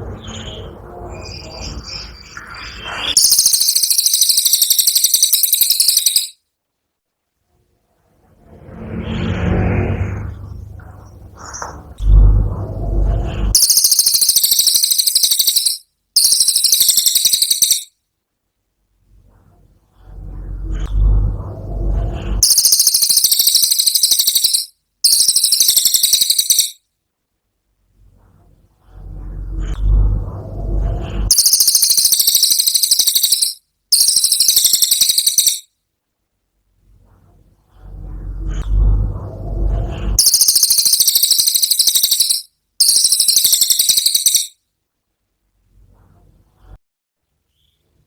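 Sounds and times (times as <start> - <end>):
bird rattling trills: 3.2 - 6.4, 13.6 - 17.9, 22.4 - 26.8, 31.3 - 35.7, 40.2 - 44.6.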